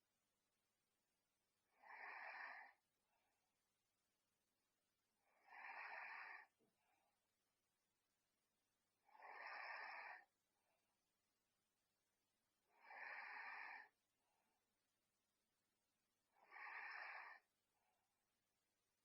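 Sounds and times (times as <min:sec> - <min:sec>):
person snoring: 0:01.7 - 0:02.8, 0:05.2 - 0:06.5, 0:09.1 - 0:10.2, 0:12.7 - 0:13.9, 0:16.3 - 0:17.5.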